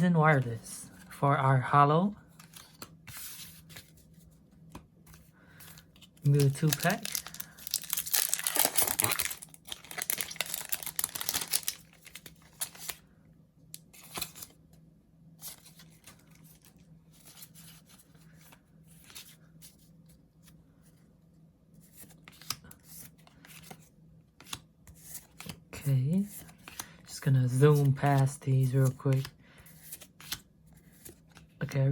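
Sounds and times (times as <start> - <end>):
cards rustling and flicking: 2.3 - 13.0, 13.8 - 14.6, 21.8 - 31.9
foil pack tearing and crinkling: 6.4 - 12.9.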